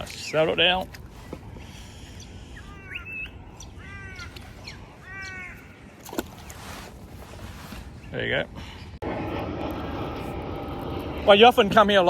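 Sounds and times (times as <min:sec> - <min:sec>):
crow cawing: 0:03.7 - 0:04.4, 0:05.0 - 0:05.8.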